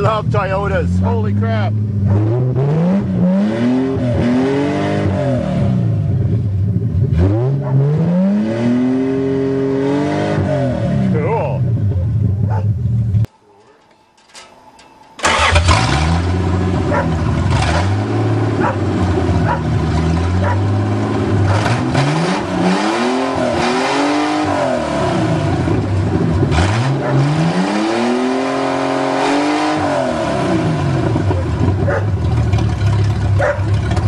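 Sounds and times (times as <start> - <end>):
car engine idling and revving: 0.0 - 13.3, 15.2 - 34.0.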